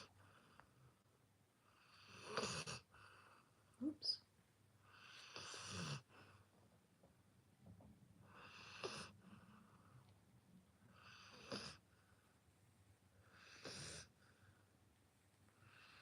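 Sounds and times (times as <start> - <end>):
puppy snoring faintly: 1.6 - 4.0, 4.9 - 6.5, 8.2 - 10.1, 10.8 - 12.3, 13.2 - 14.6.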